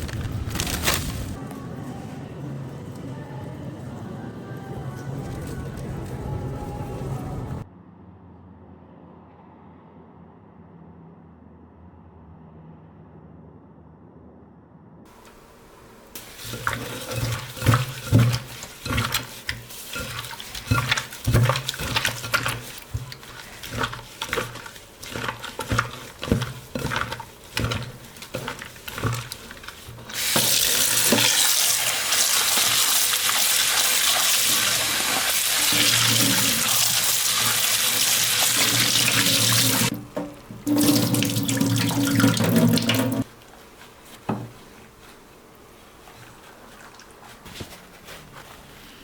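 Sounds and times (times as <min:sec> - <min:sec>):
tap running into a sink: 0:35.4 - 0:43.2.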